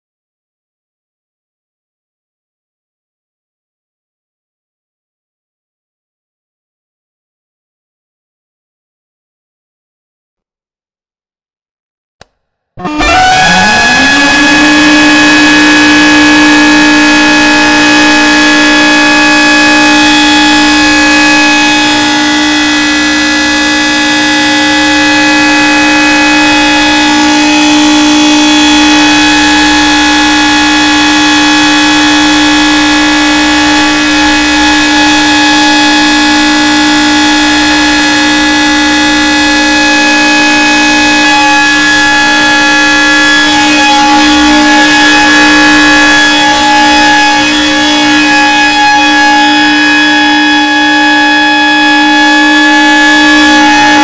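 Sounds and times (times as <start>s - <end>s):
tornado warning siren: 12.8s - 54.0s.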